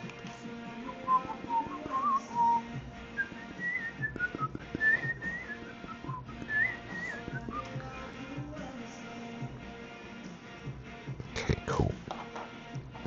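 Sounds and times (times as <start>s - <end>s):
quiet background music: 0.0s - 13.0s
person whistling a tune: 0.8s - 8.0s.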